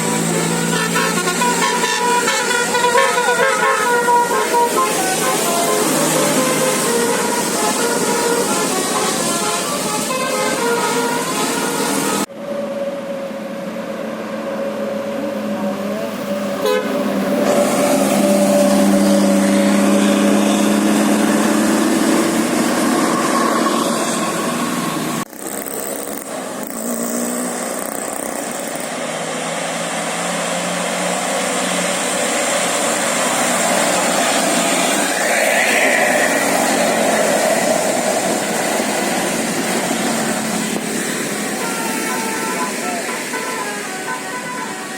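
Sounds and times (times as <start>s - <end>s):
road traffic: 0.0s - 44.9s
musical air horn: 0.2s - 12.3s, 16.5s - 19.3s, 40.4s - 44.9s.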